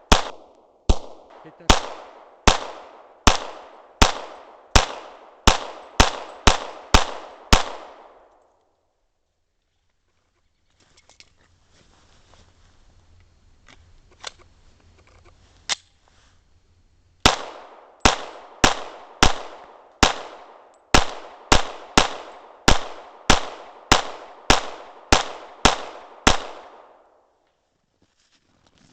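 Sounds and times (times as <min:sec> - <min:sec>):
pistol shots echoing: 0:00.0 - 0:08.4, 0:17.2 - 0:27.2.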